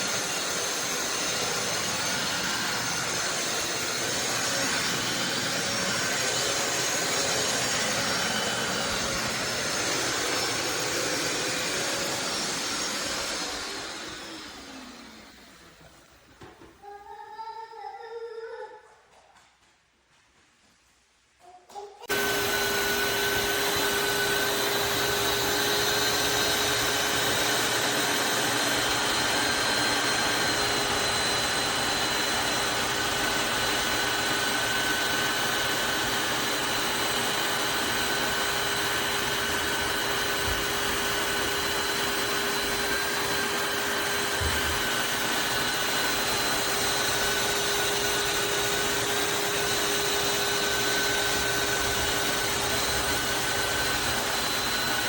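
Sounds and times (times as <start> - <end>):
suction airflow rush: 0.0 - 15.9
vacuum mop motor drone: 0.0 - 17.0, 22.0 - 55.0.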